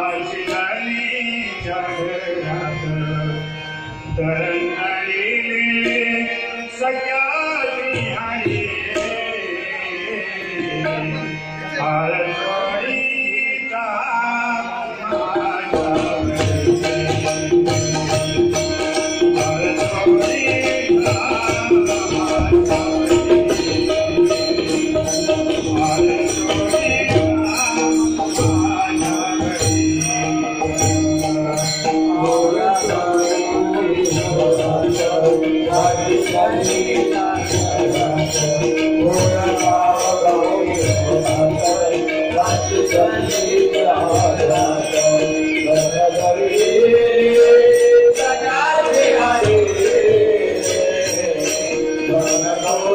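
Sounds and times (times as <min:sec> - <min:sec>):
jingling metallic percussion: 0:00.0 - 0:52.9
sustained held tones: 0:15.8 - 0:52.9.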